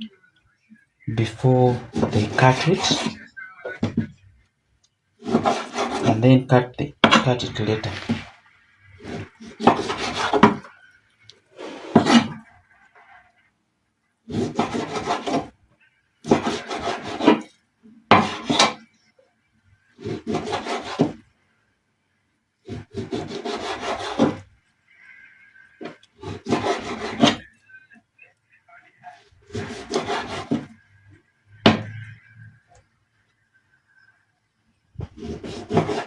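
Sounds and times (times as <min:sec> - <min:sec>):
knife sawing through meat: 0:22.7 - 0:24.4.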